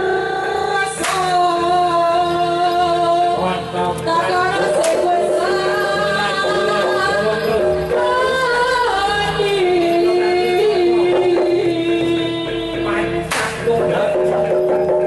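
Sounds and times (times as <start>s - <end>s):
woman singing: 0.0s - 14.2s
music ensemble: 0.0s - 15.0s
sharp percussion strike: 10.9s - 15.0s.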